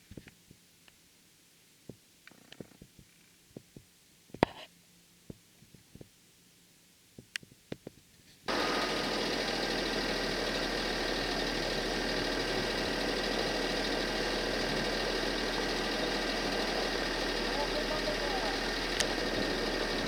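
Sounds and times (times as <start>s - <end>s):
engine humming: 8.5s - 20.0s
faint clicks: 18.8s - 19.2s.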